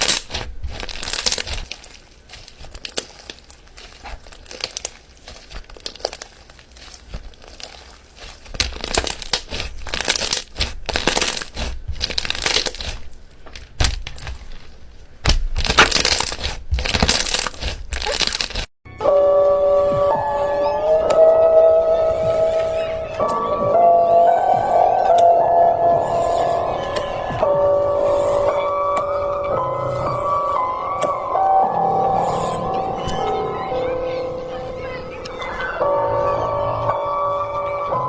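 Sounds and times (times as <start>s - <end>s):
music: 18.9s - 38.0s.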